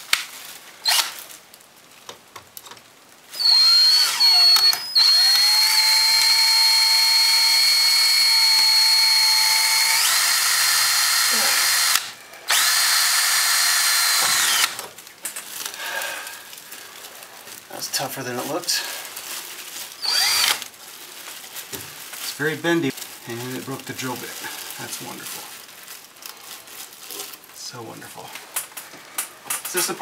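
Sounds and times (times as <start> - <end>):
power drill boring sheet metal: 0.9 - 1.2, 3.4 - 14.8, 20.0 - 20.6.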